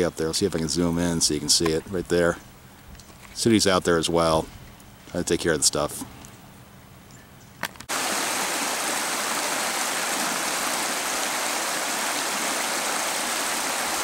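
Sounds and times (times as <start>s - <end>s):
loud steady rushing hiss: 7.9s - 14.0s.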